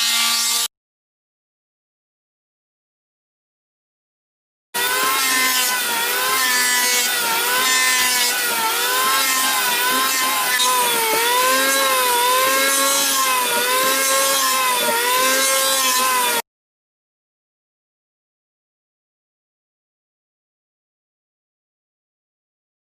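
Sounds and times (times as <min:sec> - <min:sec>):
power tool cutting wood: 0:00.0 - 0:00.7, 0:04.8 - 0:16.5.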